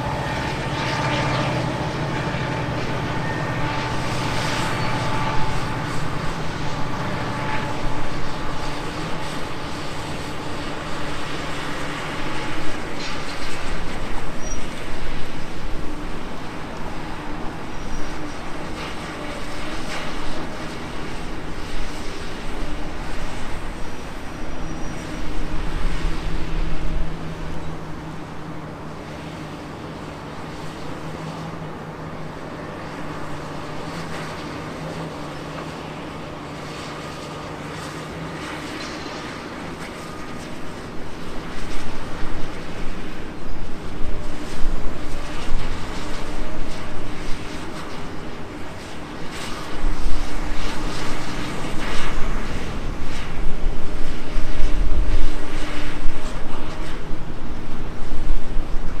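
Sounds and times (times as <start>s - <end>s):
loud low rumbling: 0.0s - 9.8s
excavator diesel engine running: 0.0s - 14.0s.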